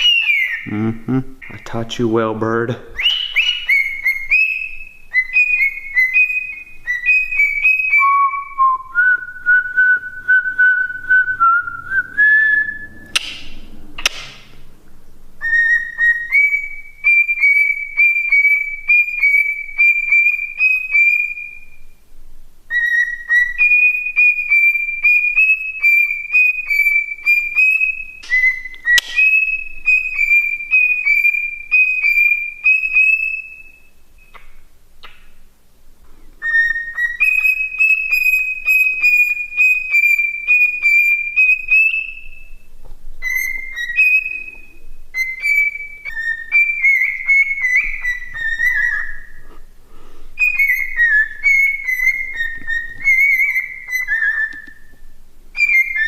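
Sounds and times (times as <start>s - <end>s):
cockatiel whistling: 0.0s - 0.8s, 2.9s - 13.6s, 15.4s - 21.9s, 22.7s - 35.2s, 36.4s - 49.7s, 50.4s - 56.0s
harsh bird calls: 0.0s - 8.6s, 15.4s - 21.8s, 22.7s - 35.2s, 36.4s - 42.6s, 43.2s - 49.8s, 50.4s - 54.8s
sharp click: 13.1s - 14.5s, 28.2s - 29.4s.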